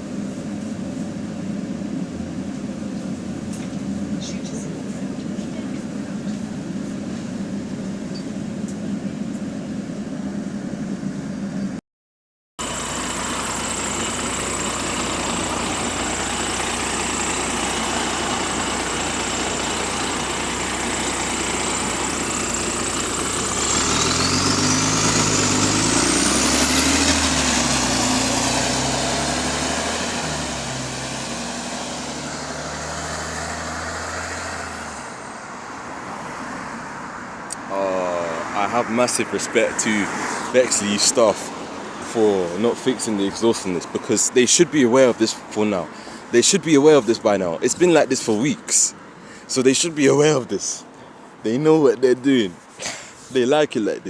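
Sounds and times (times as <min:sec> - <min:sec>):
diesel bus engine running: 0:00.0 - 0:11.8, 0:12.6 - 0:36.0, 0:36.8 - 0:54.0
high whine: 0:12.6 - 0:32.8.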